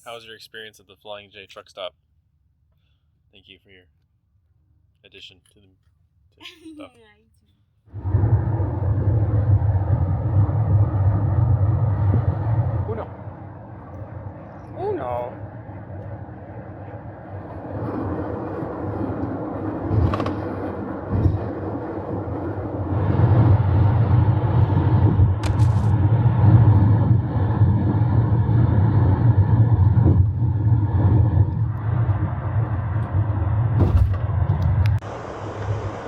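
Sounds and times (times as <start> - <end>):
road and engine rumble: 7.9 - 36.0.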